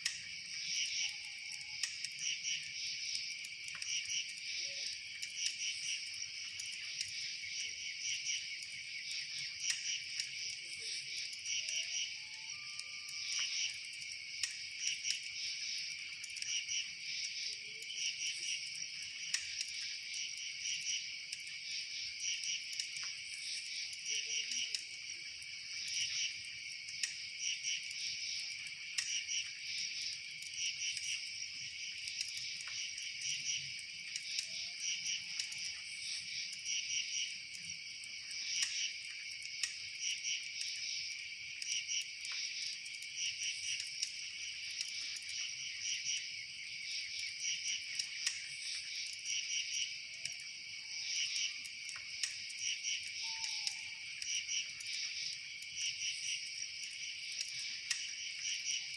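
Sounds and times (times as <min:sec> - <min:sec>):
faint clicks: 0:00.0 - 0:02.3, 0:12.6 - 0:16.6, 0:17.2 - 0:20.5, 0:22.7 - 0:27.2, 0:27.8 - 0:31.4, 0:32.0 - 0:41.0, 0:46.9 - 0:49.3, 0:51.4 - 0:58.9
insects chirping: 0:00.0 - 0:58.9.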